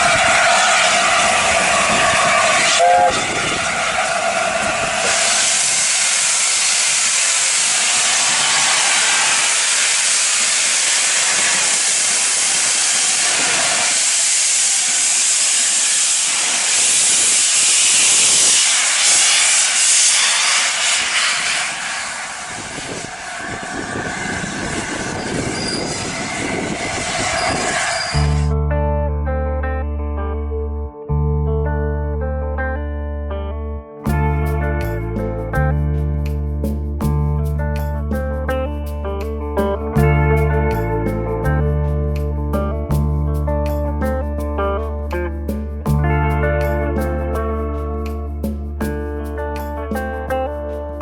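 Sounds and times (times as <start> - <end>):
steam train hissing: 0.0 - 28.5
wheels on rail: 0.0 - 28.5
guitar music: 28.5 - 51.0.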